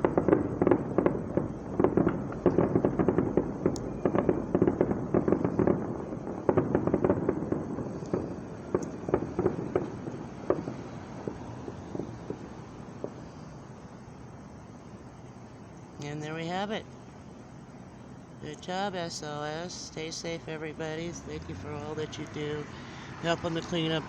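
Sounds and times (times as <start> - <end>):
fireworks bangs and crackles: 0.0 - 14.1, 19.8 - 24.0.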